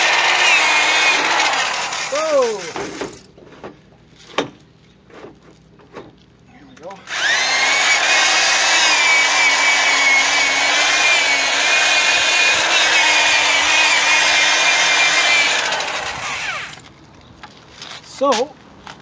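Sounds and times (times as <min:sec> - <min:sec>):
electric drill whining: 0:00.0 - 0:02.5, 0:07.1 - 0:16.8.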